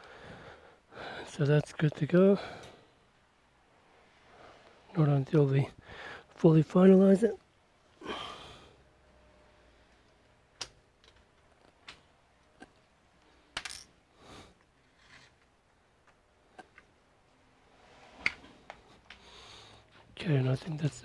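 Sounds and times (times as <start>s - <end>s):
small screws clicking and tapping: 13.5s - 13.9s.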